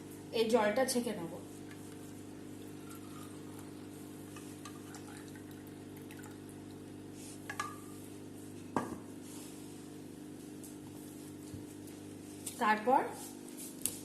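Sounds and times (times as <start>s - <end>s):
steady low hum: 0.0s - 14.0s
liquid being poured: 1.8s - 7.0s.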